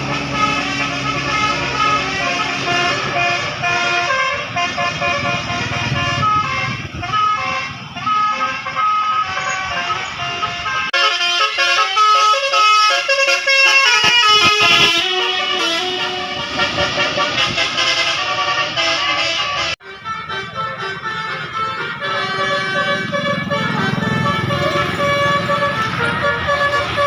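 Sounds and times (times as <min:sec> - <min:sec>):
bus air horn melody: 0:00.0 - 0:27.0
low engine rumble: 0:13.8 - 0:27.0.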